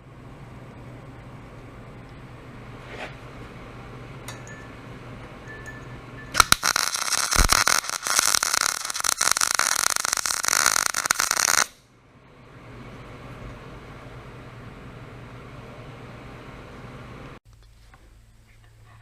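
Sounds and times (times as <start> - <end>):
faint hum: 0.0 - 19.0
arc welding crackle: 6.4 - 11.8.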